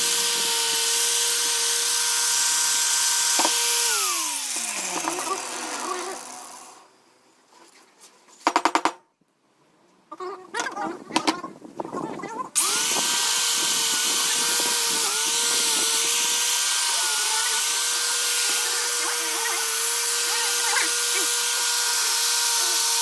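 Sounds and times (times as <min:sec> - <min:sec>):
power tool motor whine: 0:00.0 - 0:06.9, 0:12.6 - 0:23.0.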